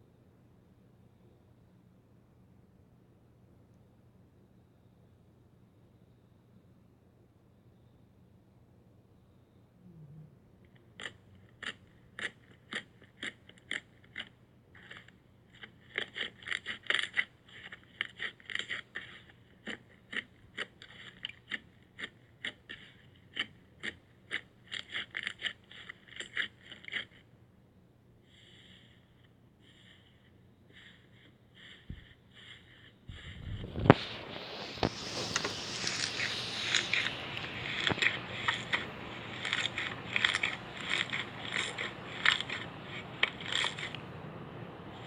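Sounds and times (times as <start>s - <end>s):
slime squelches: 29.7s - 45.0s.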